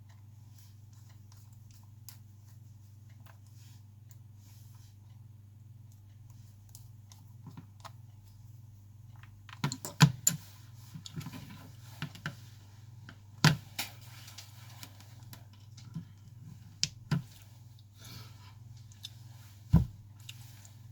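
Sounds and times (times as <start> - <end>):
small tools clicking and tapping: 9.1 - 10.4.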